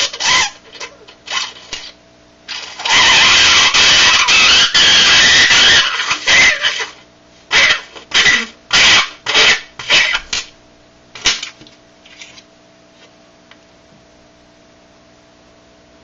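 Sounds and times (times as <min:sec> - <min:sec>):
coin buzzing on dry ice: 0:00.0 - 0:10.4.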